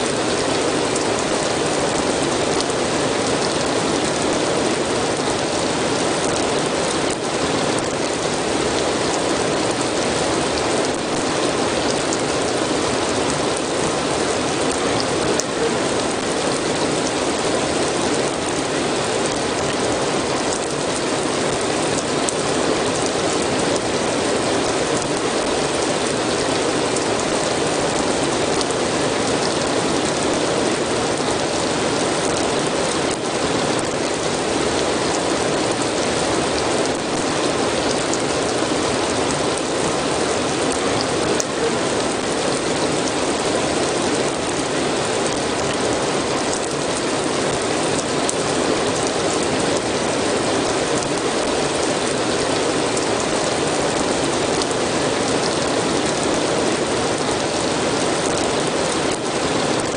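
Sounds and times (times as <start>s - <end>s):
steady rain patter: 0.0s - 59.9s.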